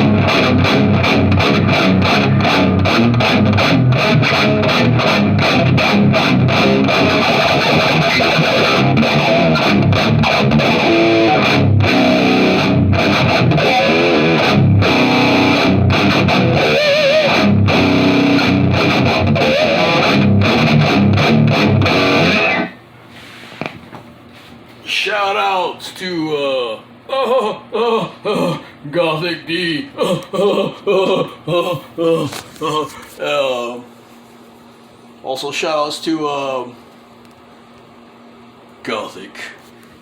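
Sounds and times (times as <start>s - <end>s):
distorted electric guitar riffs: 0.0s - 22.8s.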